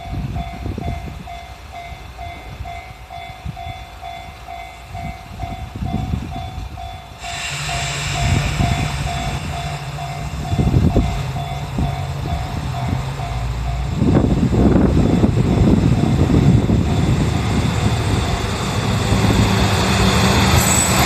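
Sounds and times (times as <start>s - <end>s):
railcar engine drone: 0.0s - 21.0s
level-crossing alarm clanging: 1.3s - 13.9s, 15.9s - 21.0s
hiss: 7.2s - 10.3s.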